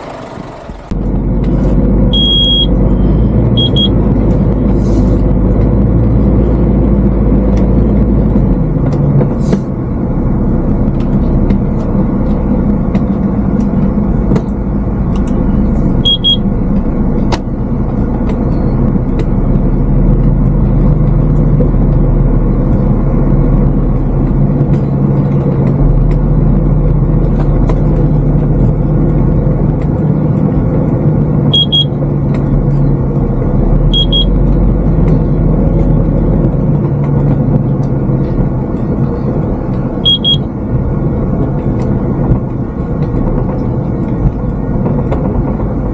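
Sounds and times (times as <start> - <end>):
diesel lorry engine running: 0.0 - 45.9
short double beep: 2.1 - 4.0, 16.0 - 16.5.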